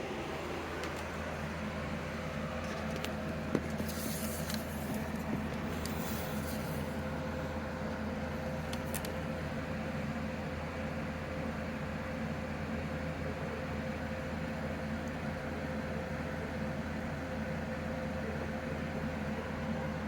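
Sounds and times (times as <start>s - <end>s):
electrical hum: 0.0s - 20.0s.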